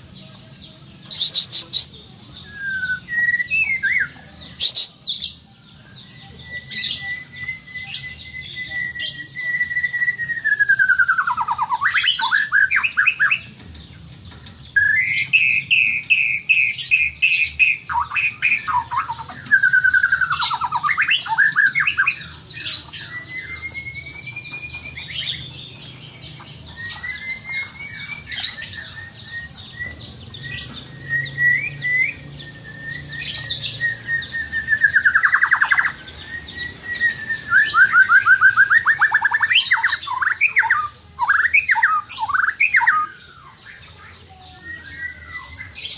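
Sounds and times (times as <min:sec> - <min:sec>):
songbird singing: 0:00.0 - 0:45.9
bird chip calls: 0:14.7 - 0:45.9.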